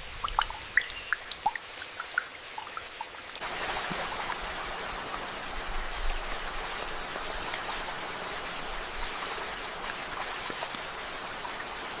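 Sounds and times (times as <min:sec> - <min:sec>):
raindrops ticking: 0:00.0 - 0:03.4
steady rain hiss: 0:00.0 - 0:12.0.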